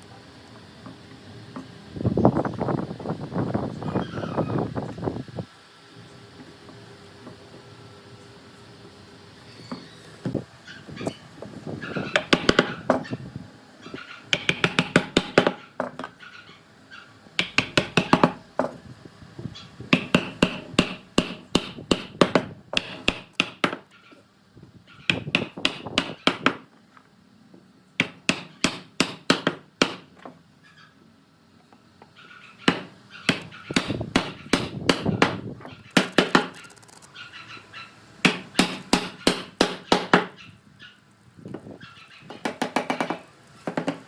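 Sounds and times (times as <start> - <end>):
hammer tapping on wood: 14.3 - 16.0, 17.4 - 18.8, 20.0 - 23.8, 28.0 - 30.1.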